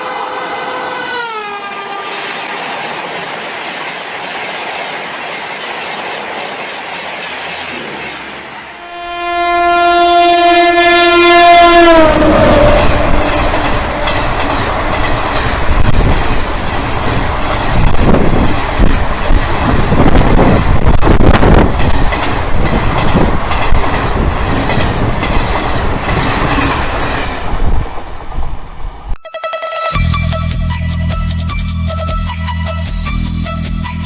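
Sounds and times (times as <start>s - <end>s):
train horn blast: 0.0s - 2.4s, 8.7s - 15.0s
train rumble: 0.0s - 29.2s
train wheel clatter: 2.3s - 8.8s, 12.5s - 27.9s.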